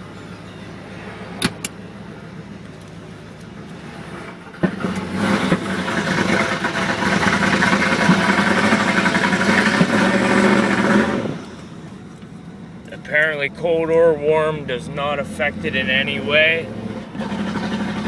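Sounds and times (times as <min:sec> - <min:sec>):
car engine running: 0:00.0 - 0:18.0
engine stumbling under throttle: 0:04.1 - 0:11.9
engine knock: 0:04.6 - 0:11.2.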